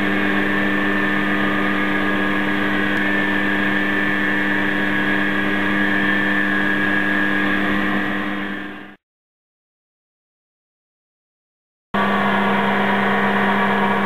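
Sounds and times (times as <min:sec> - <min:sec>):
lathe whining: 0:00.0 - 0:08.9, 0:12.0 - 0:14.0.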